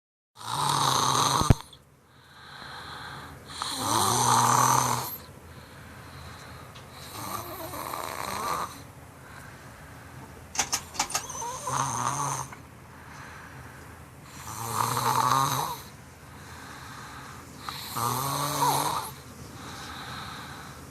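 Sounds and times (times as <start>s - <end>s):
person snoring: 0.4s - 1.8s, 2.4s - 5.3s, 7.0s - 8.9s, 11.2s - 12.6s, 14.2s - 20.8s
soft breathing: 2.0s - 3.5s, 5.1s - 7.2s, 8.8s - 10.4s, 12.4s - 14.4s, 15.8s - 18.0s, 19.1s - 20.9s
sharp click: 10.5s - 11.3s.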